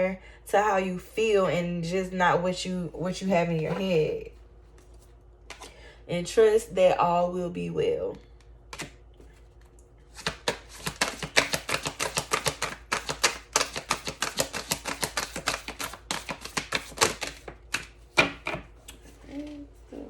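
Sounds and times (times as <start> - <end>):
cards being shuffled by hand: 8.8 - 19.3.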